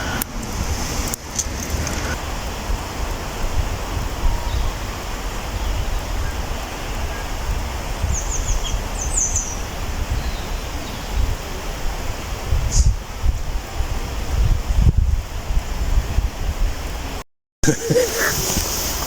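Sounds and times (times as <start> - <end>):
wind buffeting microphone: 0.0 - 17.2
bird chirping: 8.1 - 11.2.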